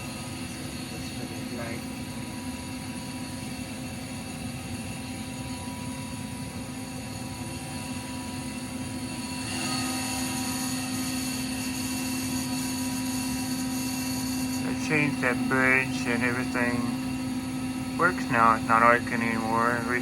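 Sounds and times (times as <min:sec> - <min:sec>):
motor or fan humming: 0:00.0 - 0:20.0.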